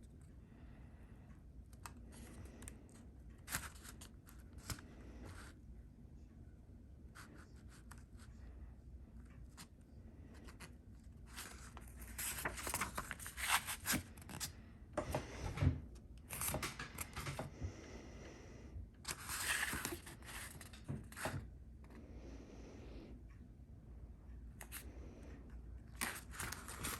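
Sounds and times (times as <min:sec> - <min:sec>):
paper rustling and crinkling: 0:03.4 - 0:05.5, 0:11.3 - 0:14.5, 0:16.3 - 0:17.4, 0:19.1 - 0:21.4, 0:26.0 - 0:26.9.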